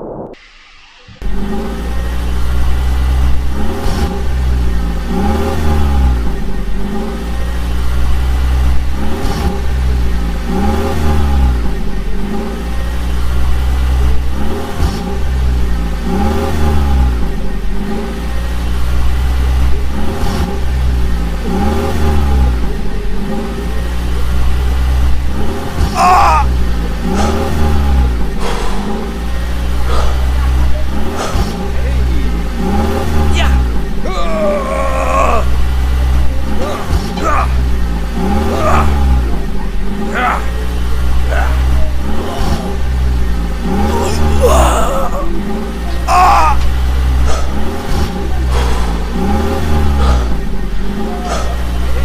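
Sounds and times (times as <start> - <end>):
low hum: 0.0 - 5.2
vehicle engine revving: 1.1 - 52.0.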